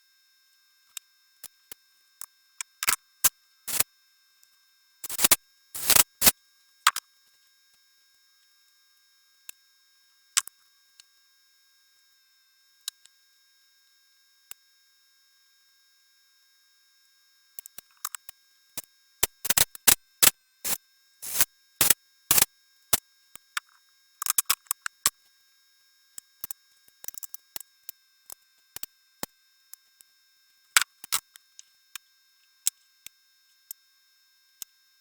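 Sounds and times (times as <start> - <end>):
sharp clicks and knocks: 5.0 - 6.3, 19.2 - 20.0, 21.2 - 22.5.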